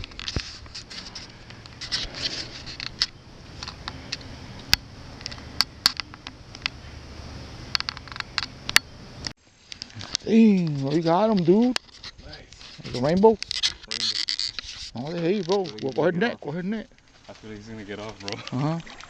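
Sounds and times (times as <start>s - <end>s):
camera handling clicks and rubbing: 0.0s - 6.8s, 10.8s - 16.0s.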